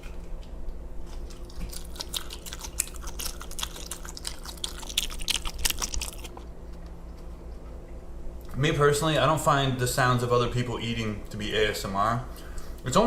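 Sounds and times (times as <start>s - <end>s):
person chewing pizza: 0.0s - 8.0s.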